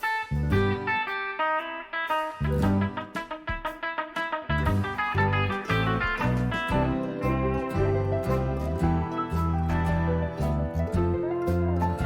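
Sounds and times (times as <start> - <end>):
plucked guitar: 0.0 - 12.0
steady bass line: 0.3 - 1.0, 2.4 - 3.1, 4.5 - 12.0.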